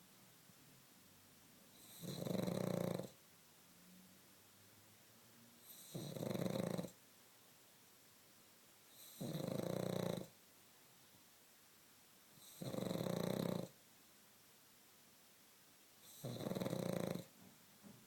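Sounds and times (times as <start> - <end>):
dog snoring: 1.7 - 3.2, 5.6 - 7.0, 8.9 - 10.4, 12.4 - 13.8, 16.0 - 17.3.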